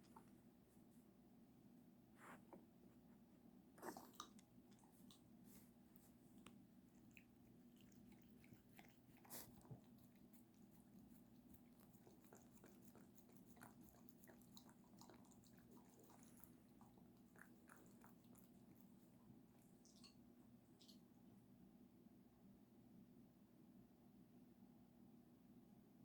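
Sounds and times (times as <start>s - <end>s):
low steady hum: 0.0s - 26.0s.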